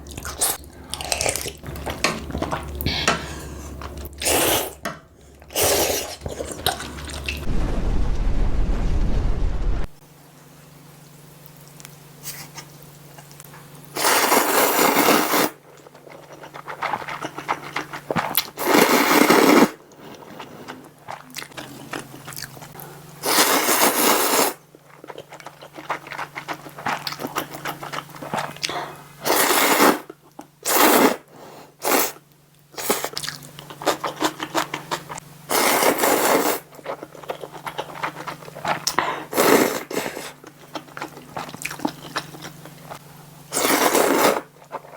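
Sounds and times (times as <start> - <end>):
noodle slurps: 4.2 - 4.8, 5.5 - 7.4, 14.0 - 15.6, 16.4 - 19.8, 23.2 - 24.6, 29.2 - 31.2, 35.5 - 36.8, 37.9 - 40.4, 43.5 - 44.9
chewing: 15.7 - 18.6, 19.9 - 22.8, 24.8 - 28.8, 33.0 - 44.9.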